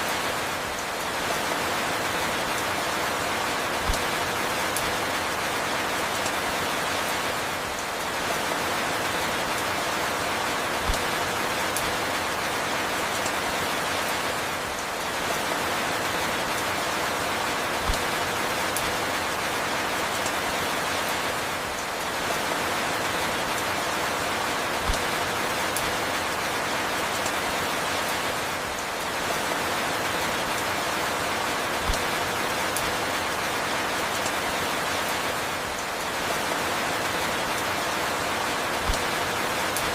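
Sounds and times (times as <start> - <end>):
steady rain hiss: 0.0 - 39.9
rain drop ticks: 3.8 - 5.2, 10.8 - 12.5, 17.8 - 19.3, 24.8 - 39.9.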